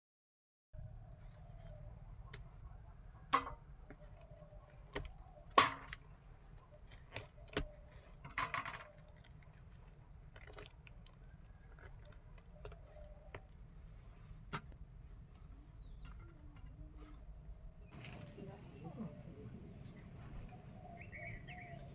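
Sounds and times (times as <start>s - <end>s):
low steady hum: 12.2s - 21.9s.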